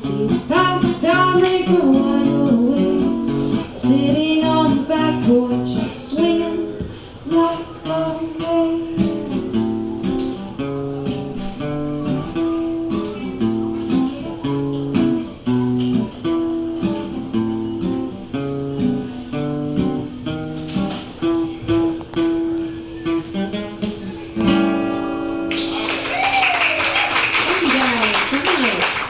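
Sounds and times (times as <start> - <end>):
guitar playing: 0.0 - 28.6
people clapping: 25.4 - 29.0.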